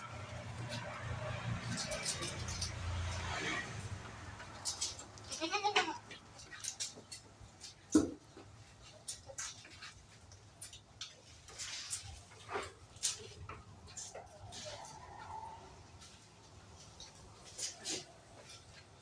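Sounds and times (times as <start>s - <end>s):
clicks and knocks of animals moving: 0.0s - 19.0s
goat bleating: 4.8s - 6.4s.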